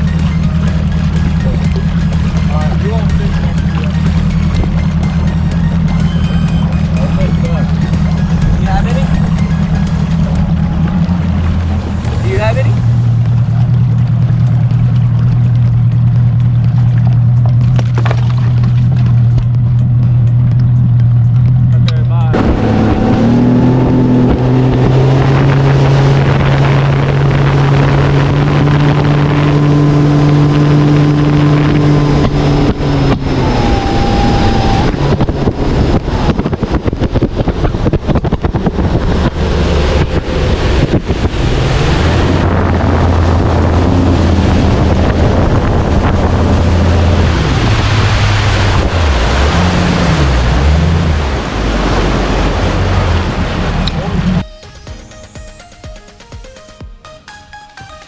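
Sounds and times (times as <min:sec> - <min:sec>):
water rushing past hull: 0:00.0 - 0:54.4
outboard motor running: 0:00.0 - 0:55.3
wind buffeting microphone: 0:22.3 - 0:54.4.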